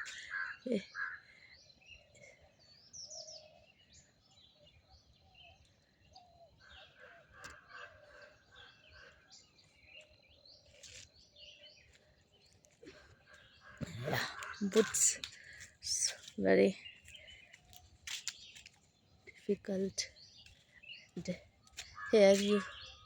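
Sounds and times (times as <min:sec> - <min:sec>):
birds chirping: 0:00.0 - 0:23.0
soft snaps or rustles: 0:10.7 - 0:11.1, 0:17.7 - 0:18.8.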